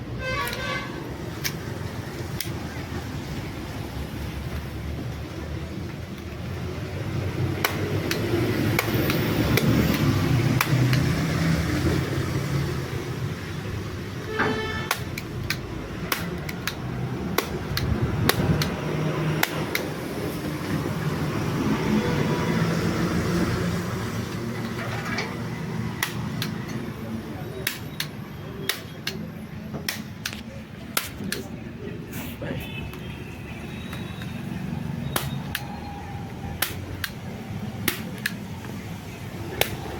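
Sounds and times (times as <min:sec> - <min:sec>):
metallic tool clicks and taps: 0:07.6 - 0:11.1, 0:14.9 - 0:18.8, 0:19.4 - 0:19.9, 0:26.0 - 0:26.8, 0:27.6 - 0:31.5, 0:36.6 - 0:37.2, 0:37.8 - 0:38.8.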